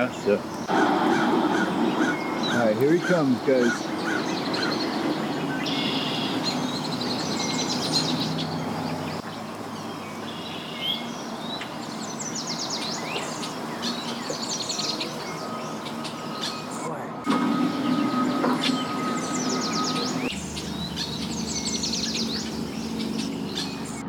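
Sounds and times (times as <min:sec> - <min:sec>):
birds chirping and trilling: 0:00.0 - 0:24.0
outdoor background noise: 0:00.0 - 0:24.0
low steady hum: 0:06.3 - 0:24.0.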